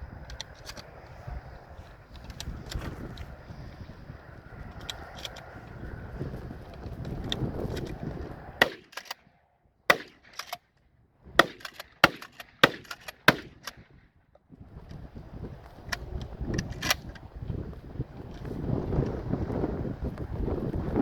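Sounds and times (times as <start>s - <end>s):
wind on microphone: 0.0s - 8.9s, 11.2s - 21.0s
shotgun shots: 8.6s - 9.2s, 9.9s - 10.6s, 11.4s - 13.8s.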